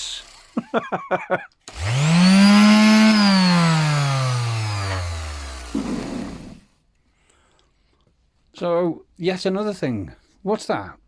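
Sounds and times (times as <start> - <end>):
electric sander motor whining: 0.0 - 0.6, 1.7 - 6.6
sander rattle: 0.0 - 1.0, 1.6 - 6.6.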